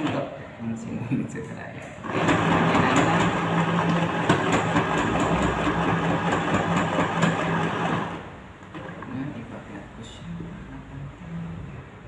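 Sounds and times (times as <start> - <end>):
electric sewing machine running: 2.0 - 9.0.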